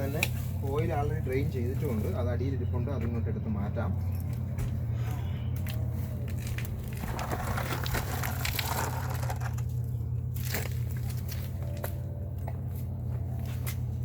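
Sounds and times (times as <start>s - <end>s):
plastic container scraping and crinkling: 6.3s - 11.8s.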